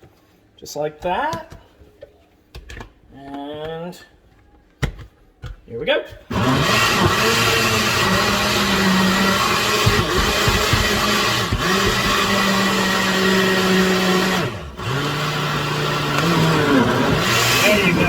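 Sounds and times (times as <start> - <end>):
blender motor running: 6.3 - 18.0.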